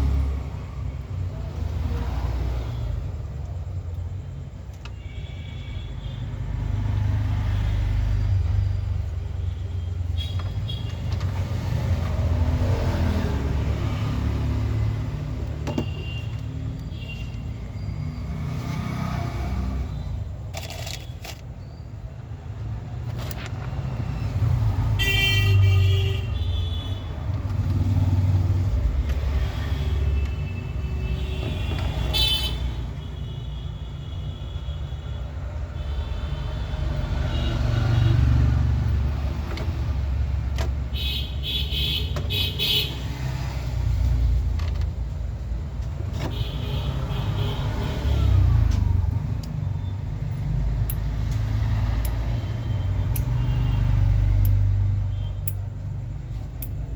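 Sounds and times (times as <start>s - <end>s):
road traffic rumbling: 0.0s - 56.9s
vehicle horns honking: 15.7s - 17.5s, 25.0s - 27.2s, 29.8s - 35.2s, 40.9s - 43.1s.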